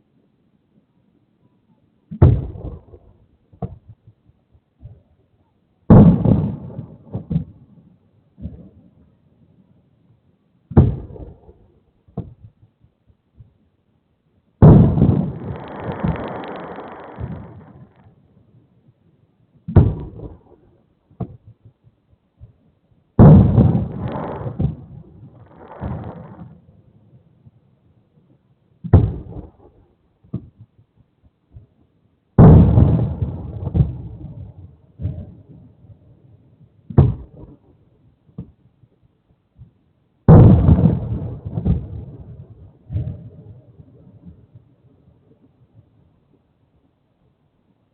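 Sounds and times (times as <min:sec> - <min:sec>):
firework booms: 0:02.1 - 0:04.0, 0:05.9 - 0:07.8, 0:10.7 - 0:12.6, 0:14.6 - 0:18.2, 0:19.7 - 0:21.7, 0:23.2 - 0:26.8, 0:28.8 - 0:30.7, 0:32.4 - 0:36.0, 0:36.9 - 0:37.7, 0:40.3 - 0:44.7
small firework pops: 0:02.1 - 0:04.2, 0:05.9 - 0:07.7, 0:14.6 - 0:18.2, 0:19.6 - 0:22.6, 0:23.2 - 0:26.7, 0:36.9 - 0:37.6, 0:38.4 - 0:38.6.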